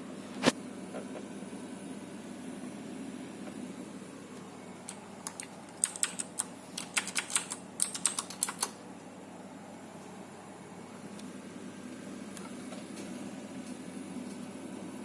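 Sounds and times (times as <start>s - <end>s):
computer keyboard typing: 4.9s - 8.8s.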